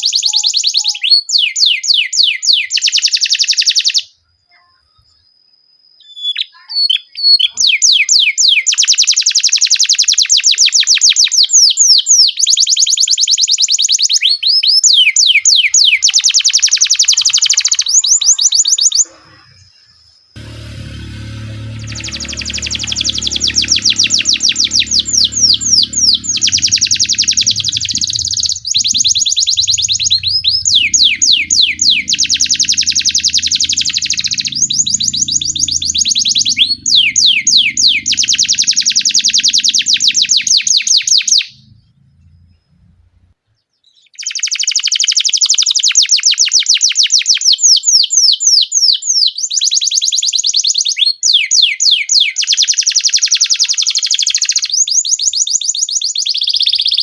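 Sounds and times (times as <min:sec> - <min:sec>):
canary singing trills: 0:00.0 - 0:05.2, 0:14.2 - 0:20.2, 0:20.8 - 0:43.3.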